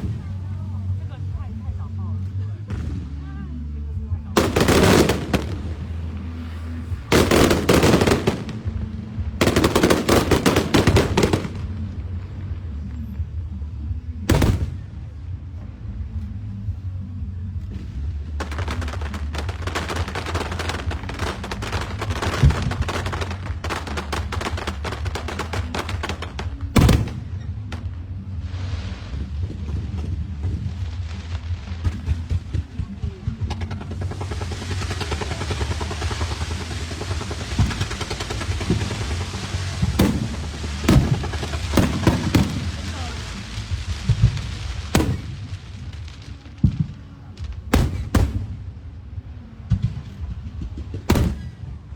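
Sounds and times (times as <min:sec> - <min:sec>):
fireworks crackling: 0:02.6 - 0:13.5, 0:14.3 - 0:15.2, 0:17.9 - 0:51.9
sharp firework booms: 0:04.4 - 0:06.1, 0:07.1 - 0:11.8, 0:14.3 - 0:14.9, 0:18.4 - 0:27.5, 0:34.0 - 0:46.0, 0:47.7 - 0:48.8, 0:51.0 - 0:51.6
hissing crackle: 0:04.4 - 0:11.8, 0:18.4 - 0:27.4, 0:33.5 - 0:48.6.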